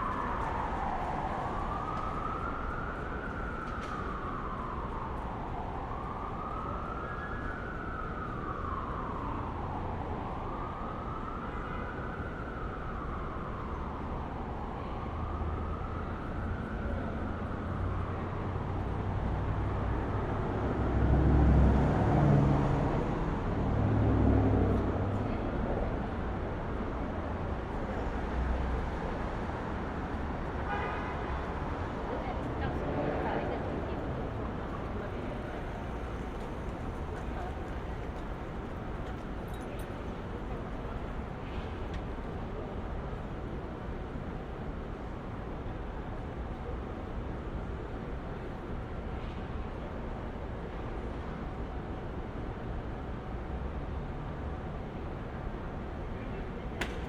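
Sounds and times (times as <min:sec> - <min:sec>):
emergency siren wailing: 0:00.0 - 0:25.1
hum of traffic: 0:00.0 - 0:57.0.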